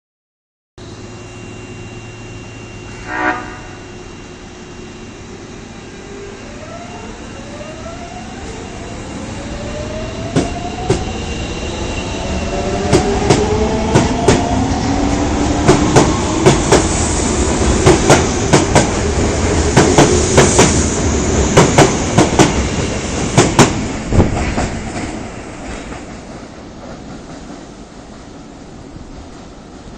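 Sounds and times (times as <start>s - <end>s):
train motor whine: 0.8s - 25.2s
train horn blast: 2.9s - 4.0s.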